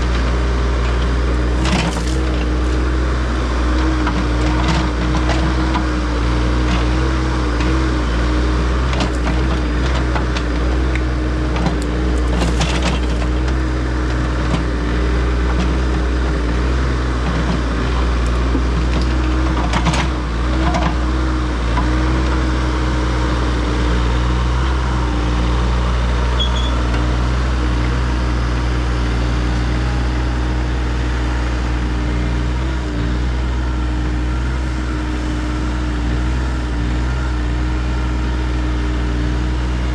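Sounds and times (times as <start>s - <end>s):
excavator diesel engine: 0.0s - 39.9s
hydraulic whine: 25.7s - 27.2s.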